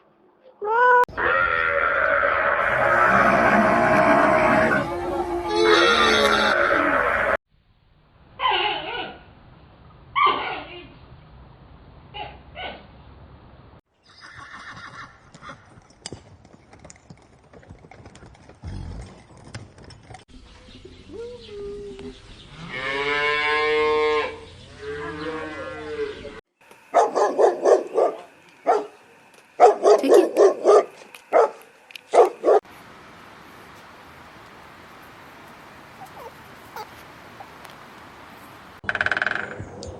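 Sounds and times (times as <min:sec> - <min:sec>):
dog barking: 0:26.9 - 0:29.0, 0:29.6 - 0:32.6.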